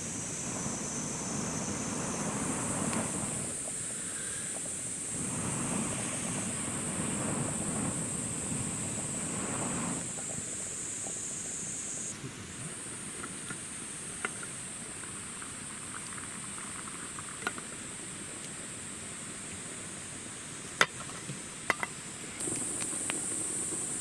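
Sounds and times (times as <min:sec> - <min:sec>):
steady high hiss: 0:00.0 - 0:24.0
campfire crackling and popping: 0:00.2 - 0:03.7, 0:05.1 - 0:10.4.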